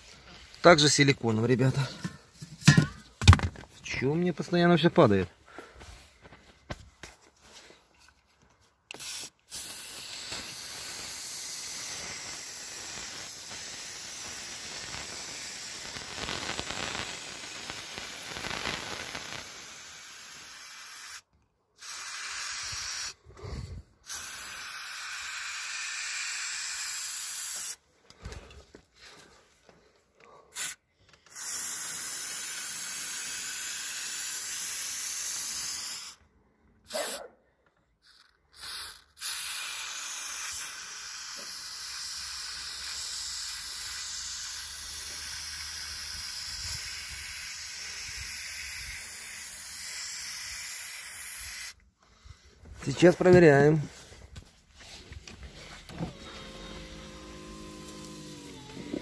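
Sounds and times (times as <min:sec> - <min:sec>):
aerosol can spraying hiss: 0:08.9 - 0:21.2, 0:21.8 - 0:23.2, 0:24.0 - 0:27.8, 0:30.6 - 0:36.2, 0:38.0 - 0:51.8.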